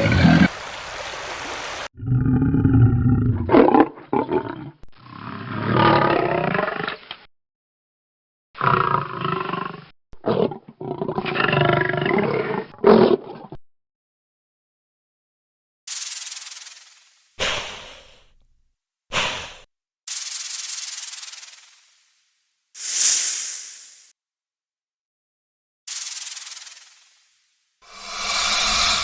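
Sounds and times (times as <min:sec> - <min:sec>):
large animal roaring: 0:00.0 - 0:00.5, 0:02.0 - 0:07.0.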